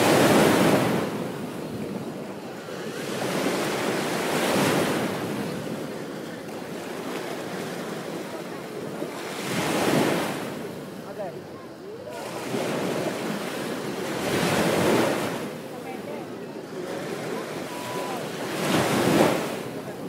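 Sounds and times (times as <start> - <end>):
ocean waves breaking: 0.0 - 20.0.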